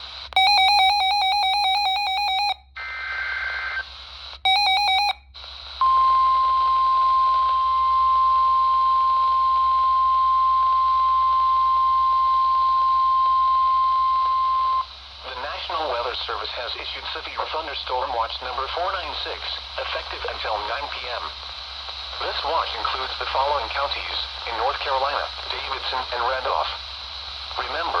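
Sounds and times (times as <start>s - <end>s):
steady warning alarm tone: 4.5s - 5.1s.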